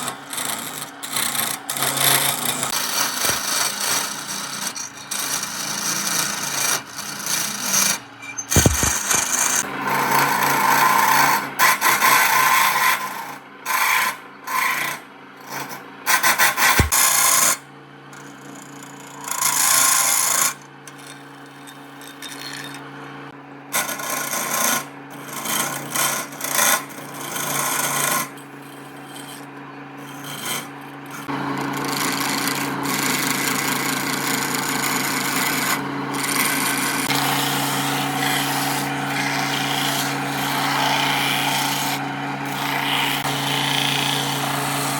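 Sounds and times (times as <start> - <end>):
tools rasping and scraping wood: 0.0 - 17.6, 18.2 - 23.0, 23.7 - 44.9
steady hum: 8.2 - 9.7
sharp knocks: 8.5 - 9.2, 16.6 - 17.0.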